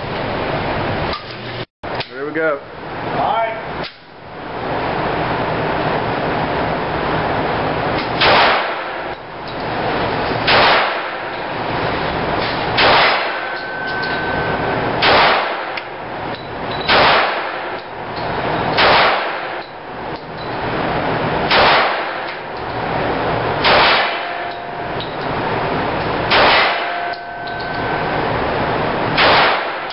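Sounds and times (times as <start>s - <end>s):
handgun shots: 8.1s - 9.0s, 10.5s - 11.2s, 12.8s - 13.6s, 15.0s - 15.8s, 16.8s - 17.8s, 18.7s - 19.7s, 21.5s - 22.4s, 23.6s - 24.6s, 26.3s - 27.1s, 29.2s - 29.9s.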